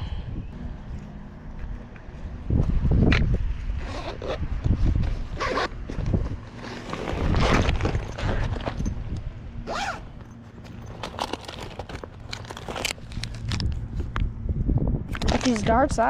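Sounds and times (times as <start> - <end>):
zipper-like scraping pulls: 3.8 - 8.8, 9.6 - 13.6
rustling: 9.7 - 14.2.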